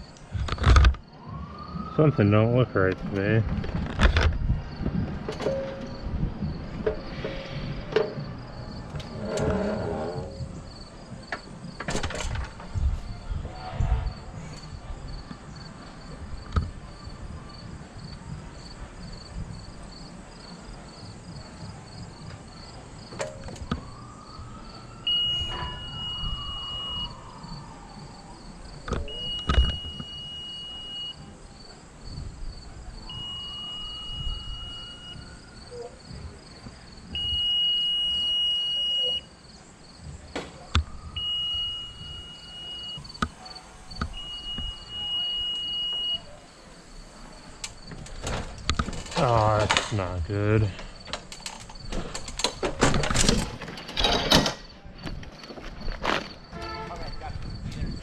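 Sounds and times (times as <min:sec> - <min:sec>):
crickets chirring: 0:00.0 - 0:58.0
electronic alarm beeping: 0:25.0 - 0:27.3, 0:29.0 - 0:31.3, 0:33.1 - 0:35.4, 0:37.2 - 0:39.3, 0:40.9 - 0:46.4.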